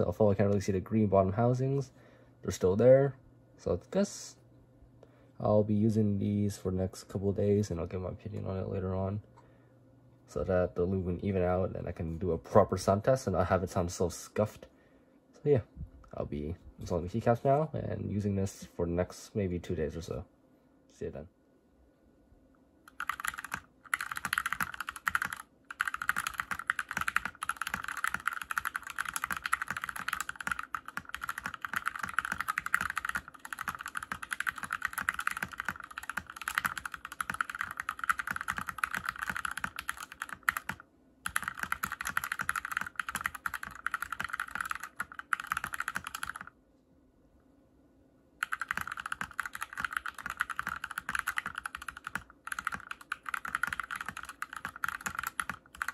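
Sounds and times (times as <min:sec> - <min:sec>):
typing on mechanical keyboard: 0:22.9 - 0:46.5, 0:48.4 - 0:55.9.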